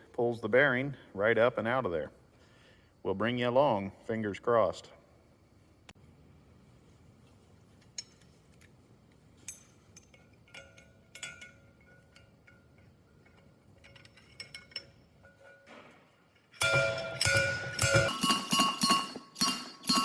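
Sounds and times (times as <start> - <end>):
light metallic tool clinks: 9.4 - 20.0.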